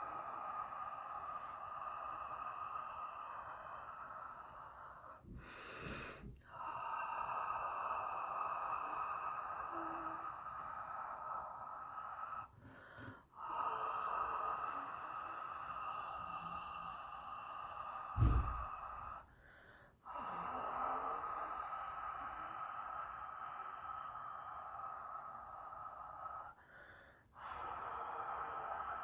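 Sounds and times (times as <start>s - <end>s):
person breathy hiss: 0.0s - 29.0s
quick intake of breath: 16.1s - 20.4s.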